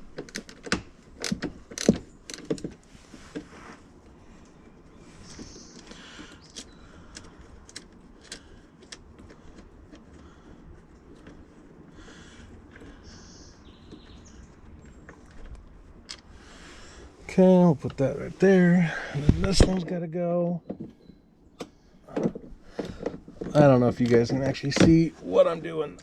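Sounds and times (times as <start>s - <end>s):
light clicks and knocks: 0.0s - 3.6s, 19.2s - 25.1s.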